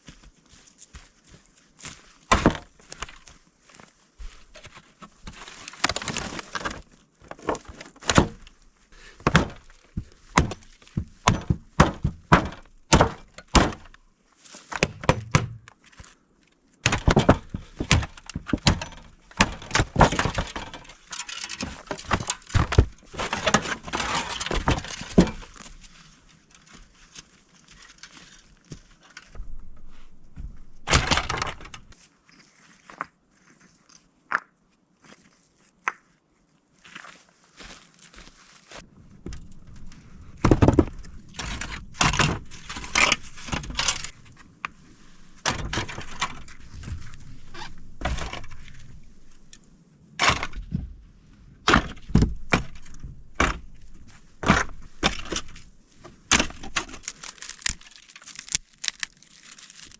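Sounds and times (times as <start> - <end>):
wood cracking and snapping: 9.2 - 14.0, 16.8 - 25.7, 29.3 - 32.0, 39.2 - 50.8, 51.6 - 59.9.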